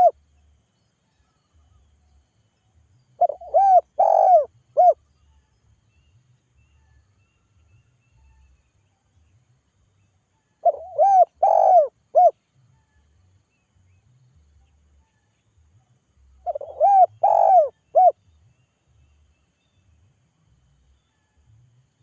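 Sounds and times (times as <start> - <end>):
dove cooing: 3.2 - 5.0, 10.6 - 12.4, 16.4 - 18.2.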